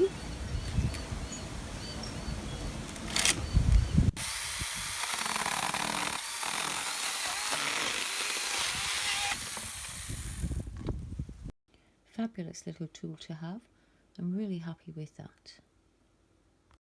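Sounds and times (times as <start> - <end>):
chainsaw cutting wood: 4.2 - 10.7.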